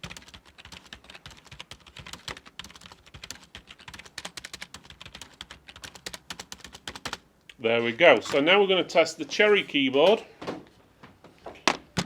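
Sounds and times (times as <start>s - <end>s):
rapid keyboard typing: 0.0s - 7.3s.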